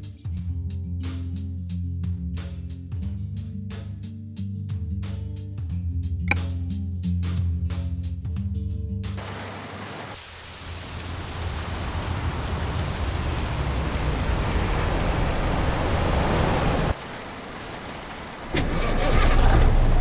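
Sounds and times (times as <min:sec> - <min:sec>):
truck diesel engine revving: 0:18.5 - 0:20.0.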